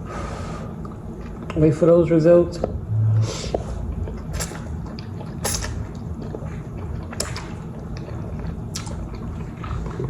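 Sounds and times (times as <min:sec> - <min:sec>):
steady low rumble: 0:00.7 - 0:10.0
wet mouth slurps: 0:03.3 - 0:10.0.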